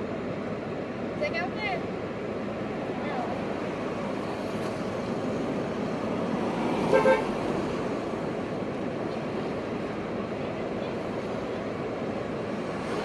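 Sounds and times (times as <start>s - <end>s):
street traffic: 0.0s - 13.0s
car horn tooting: 6.9s - 7.3s.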